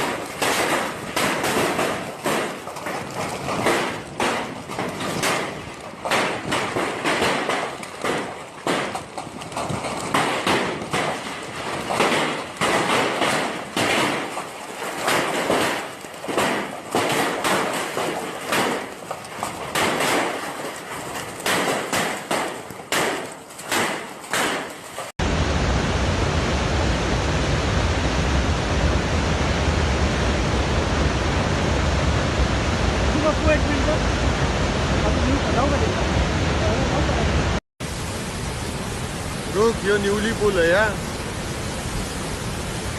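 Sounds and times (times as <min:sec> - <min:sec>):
rapid knocking and clattering: 0:00.0 - 0:25.1
roar of fast-flowing floodwater: 0:00.0 - 0:42.9.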